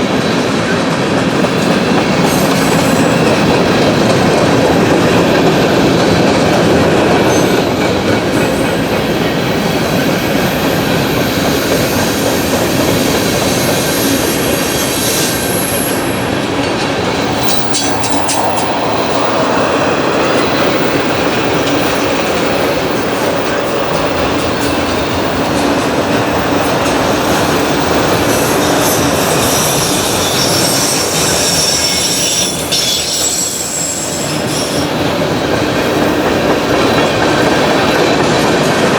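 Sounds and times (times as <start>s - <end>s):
train wheels clacking on rails: 0.0s - 38.9s
high wheel squeal: 11.3s - 21.9s, 28.0s - 34.9s.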